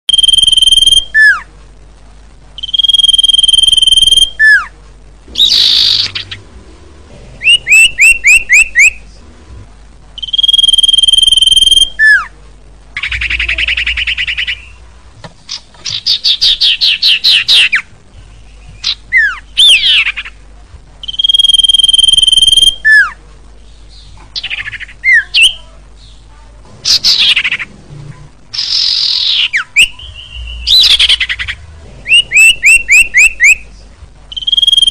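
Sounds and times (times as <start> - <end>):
bird whistled notes: 2.6 - 4.6, 7.4 - 9.0, 10.2 - 12.2, 21.0 - 23.1, 28.6 - 33.6, 34.3 - 34.9
bird chattering: 5.3 - 6.4, 13.0 - 14.8, 21.0 - 23.1, 26.8 - 27.7, 28.5 - 33.6, 34.3 - 34.9.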